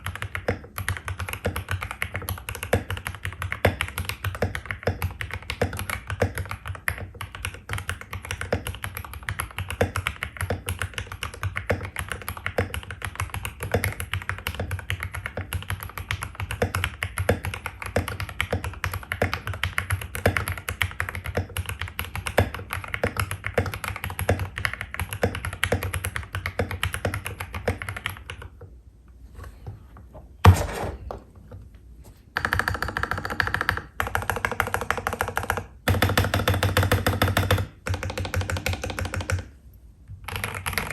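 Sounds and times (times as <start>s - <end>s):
mechanical keyboard typing: 0.0s - 28.6s, 32.4s - 39.6s, 40.2s - 40.9s
loud thump: 30.4s - 31.3s.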